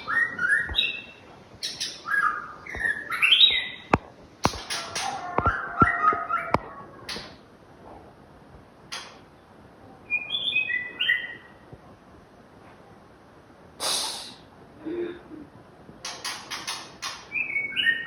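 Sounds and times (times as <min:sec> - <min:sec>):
bird singing: 0:00.0 - 0:04.0, 0:09.4 - 0:11.6, 0:17.0 - 0:18.0.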